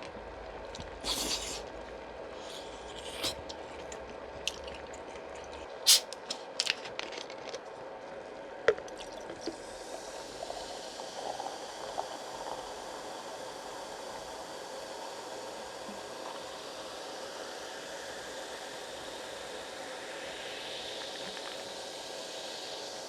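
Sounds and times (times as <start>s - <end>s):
wet squishy chewing: 0.7s - 1.7s, 2.4s - 7.6s.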